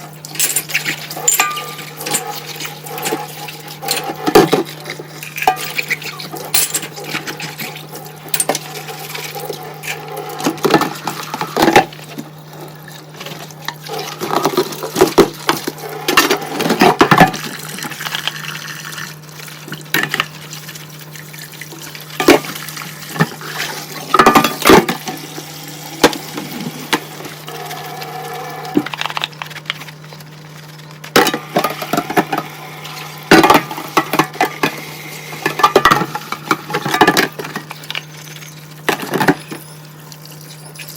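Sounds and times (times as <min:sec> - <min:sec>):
running tap water splashing: 0:00.0 - 0:28.9, 0:30.8 - 0:40.9
dishes clinking and knocking: 0:24.1 - 0:25.0.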